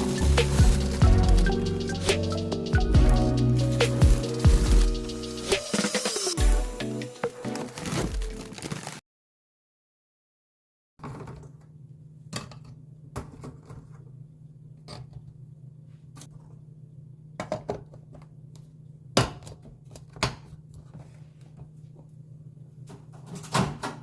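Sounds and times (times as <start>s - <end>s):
steady low hum: 0.0s - 5.5s.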